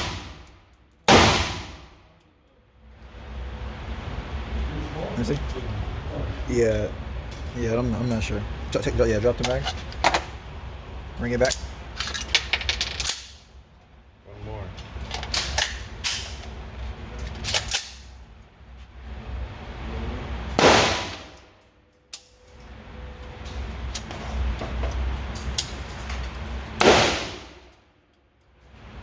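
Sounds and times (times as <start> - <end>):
loud gunshots: 0.0 - 0.4, 1.1 - 1.9, 20.6 - 21.3, 26.8 - 27.6.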